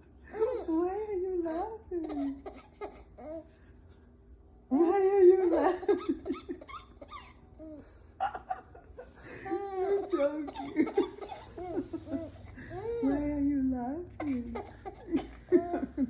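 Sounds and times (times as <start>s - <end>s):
baby laughing and giggling: 5.4s - 8.6s, 9.3s - 13.2s.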